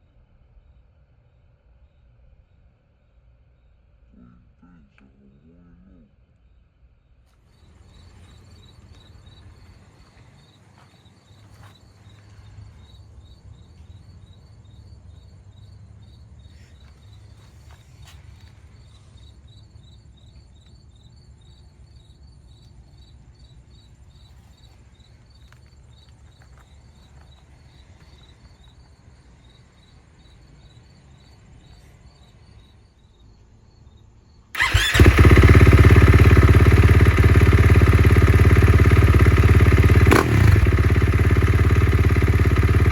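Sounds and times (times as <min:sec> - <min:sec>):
insects chirping: 0:00.4 - 0:42.9
motorcycle engine starting and running: 0:34.6 - 0:42.9.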